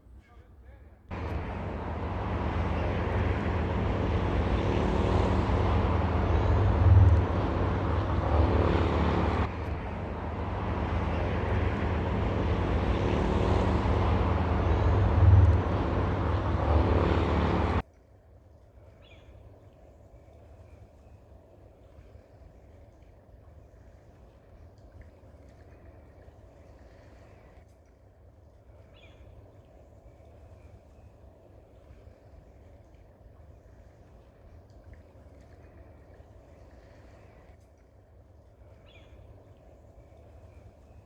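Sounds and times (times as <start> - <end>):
loud engine drone: 1.1 - 17.8.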